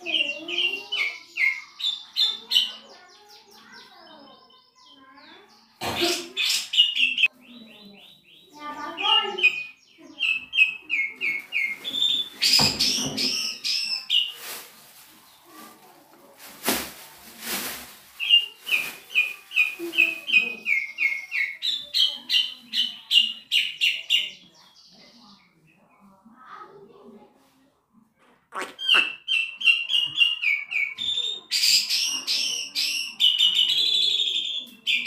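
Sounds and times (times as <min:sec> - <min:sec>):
starling singing whistled notes: 0:00.0 - 0:05.6, 0:06.3 - 0:14.3, 0:18.2 - 0:25.4, 0:28.6 - 0:35.0
harsh noisy bird sounds: 0:00.0 - 0:15.6, 0:16.6 - 0:26.3, 0:28.5 - 0:35.0.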